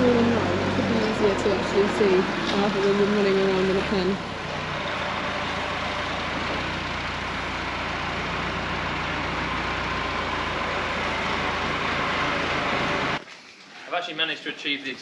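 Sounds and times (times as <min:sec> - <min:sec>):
tractor engine running: 0:00.0 - 0:13.2.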